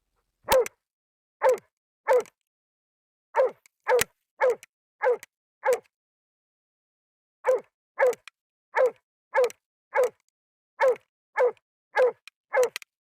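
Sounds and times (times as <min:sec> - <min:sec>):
dog barking: 0:00.5 - 0:00.8, 0:01.4 - 0:02.4, 0:03.4 - 0:05.9, 0:07.4 - 0:10.2, 0:10.8 - 0:12.8.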